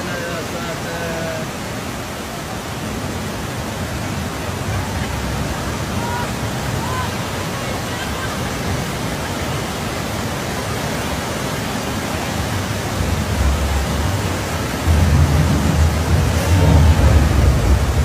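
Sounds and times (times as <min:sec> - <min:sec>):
rushing water roar: 0:00.0 - 0:18.0
heavy low rumble: 0:12.3 - 0:18.0.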